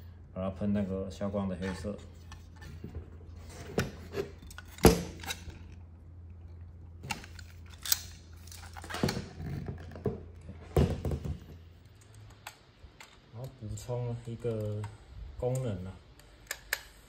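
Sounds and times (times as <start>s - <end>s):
steady low hum: 0.0s - 17.0s
air gun parts clicking: 14.5s - 17.0s.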